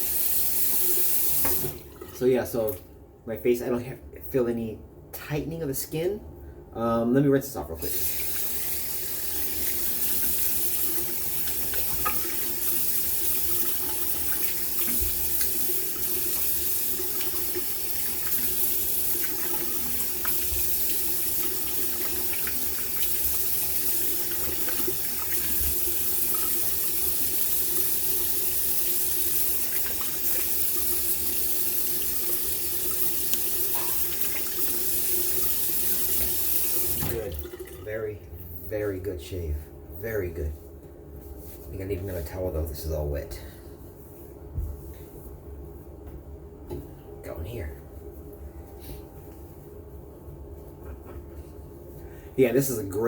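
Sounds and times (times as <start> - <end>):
tap running into sink: 1.2 - 1.9, 8.2 - 27.8, 32.0 - 37.7.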